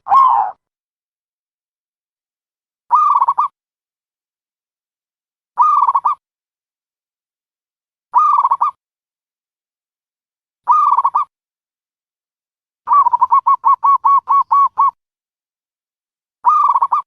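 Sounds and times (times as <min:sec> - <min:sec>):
dove cooing: 0:00.0 - 0:00.6, 0:12.9 - 0:15.0.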